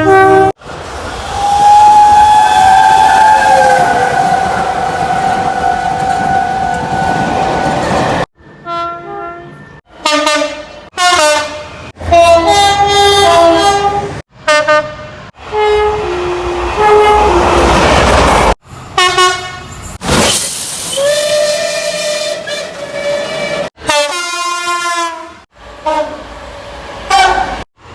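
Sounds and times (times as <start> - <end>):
long train horn note: 0.0 - 0.5, 8.6 - 17.6, 21.3 - 26.3
two-tone train horn blasts: 0.0 - 0.6, 1.7 - 7.7, 8.6 - 17.6, 19.0 - 19.7, 21.0 - 26.3, 27.1 - 27.6
passing train rumble: 0.0 - 20.0, 25.0 - 27.9.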